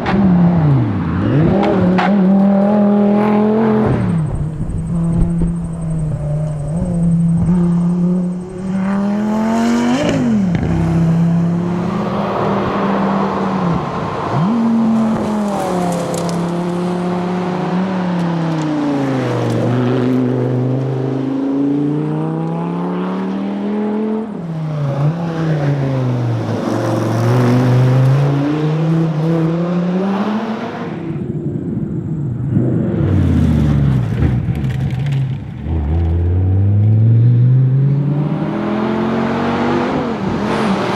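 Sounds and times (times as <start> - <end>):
sports car engine revving: 0.0 - 19.2.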